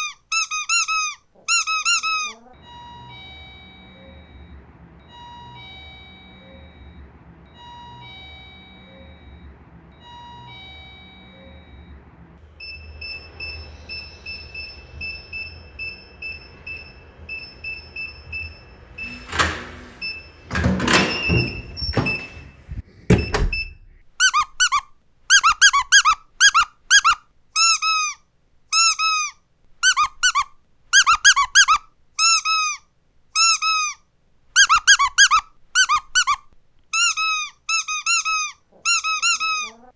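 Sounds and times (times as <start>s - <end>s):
squeaky dog toy: 0.0s - 3.0s, 24.2s - 39.9s
electronic beeps: 2.6s - 22.4s
loud clunks: 19.1s - 24.0s.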